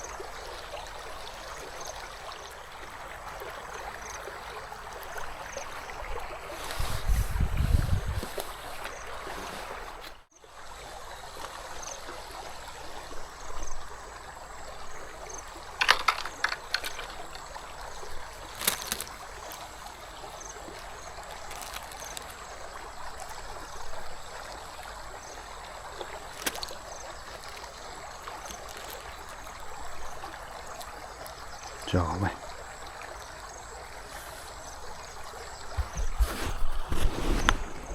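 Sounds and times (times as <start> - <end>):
river water running: 0.0 - 37.9
short clicking rattles: 15.8 - 17.4.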